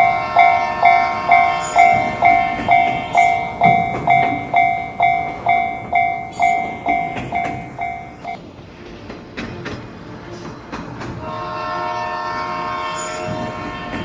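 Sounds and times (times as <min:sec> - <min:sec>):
railroad crossing bell ringing: 0:00.0 - 0:08.4, 0:12.9 - 0:13.9
train rumble: 0:00.0 - 0:14.0.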